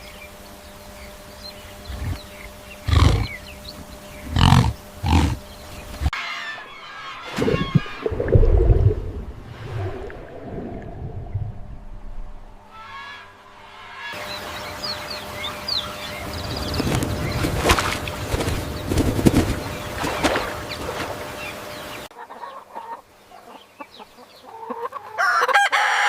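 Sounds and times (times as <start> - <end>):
series of animal calls: 0.5 - 8.2.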